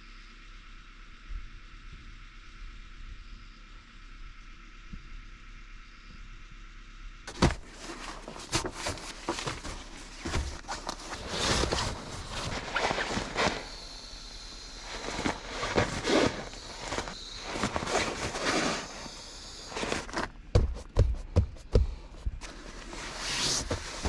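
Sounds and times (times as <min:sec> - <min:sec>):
footsteps scuffing: 0:07.3 - 0:14.0, 0:14.6 - 0:24.0.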